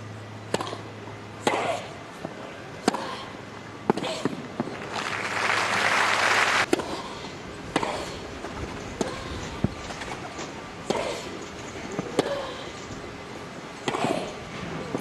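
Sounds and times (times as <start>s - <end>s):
tennis ball struck by rackets: 0.5s - 0.8s, 1.4s - 1.8s, 2.8s - 3.2s.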